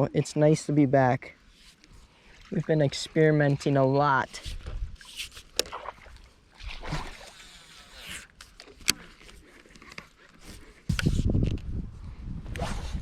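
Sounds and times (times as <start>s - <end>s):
water sloshing against boat: 1.3s - 11.2s.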